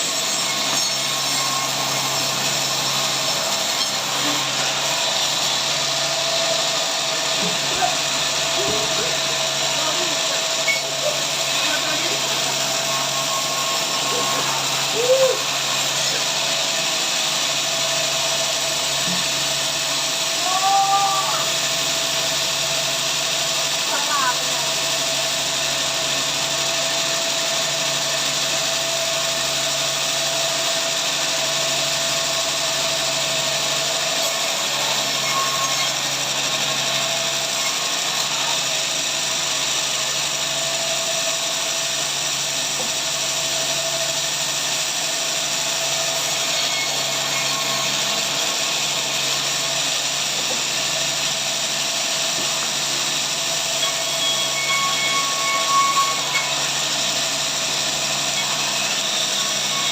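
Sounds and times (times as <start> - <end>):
sawmill saw running: 0.0 - 59.9.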